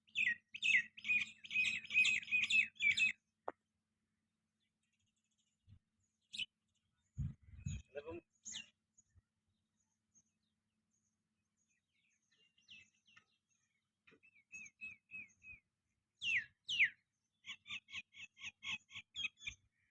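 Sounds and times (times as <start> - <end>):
bird calling: 0.1 - 3.2.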